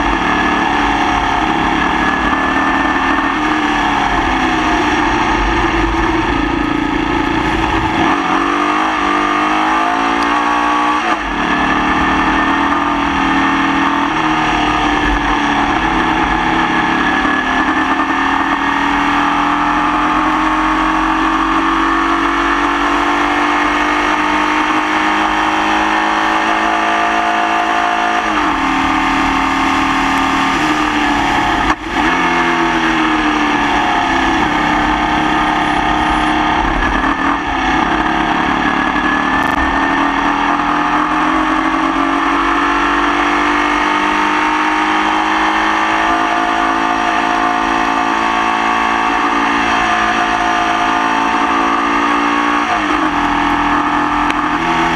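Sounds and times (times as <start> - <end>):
racing car engine misfiring: 28.5 - 42.6.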